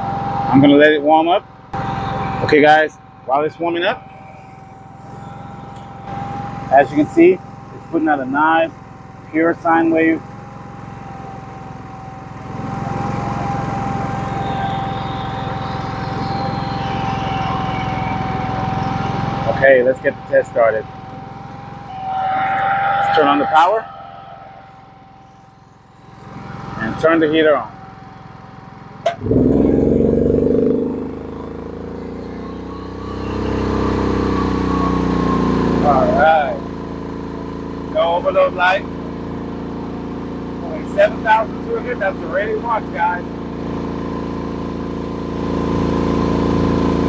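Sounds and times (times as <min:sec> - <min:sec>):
generator engine running: 0:00.0 - 0:22.0, 0:23.4 - 0:47.0
high whine: 0:01.8 - 0:28.0, 0:28.9 - 0:36.6.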